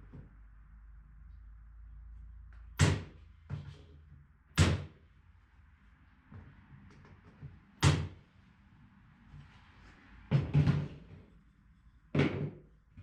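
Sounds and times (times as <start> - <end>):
nails hammered into wood: 2.8 - 3.1, 4.6 - 5.0, 7.8 - 8.2.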